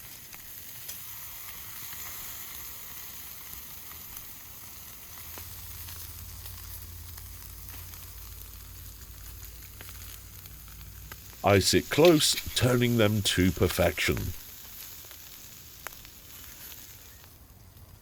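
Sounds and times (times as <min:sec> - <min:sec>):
meat sizzling on coals: 0:00.0 - 0:18.0
small crackles: 0:00.0 - 0:18.0.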